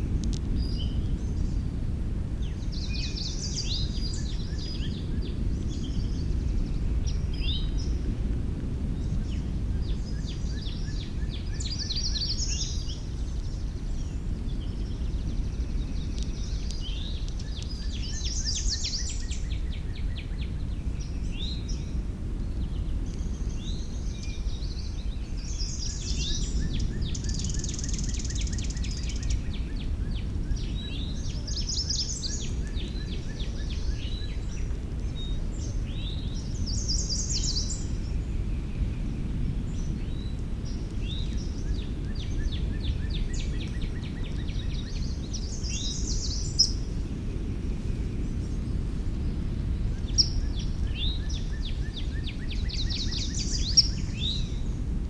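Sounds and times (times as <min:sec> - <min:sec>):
low outdoor rumble: 0:00.0 - 0:55.0
songbirds chirping and trilling: 0:00.0 - 0:55.0.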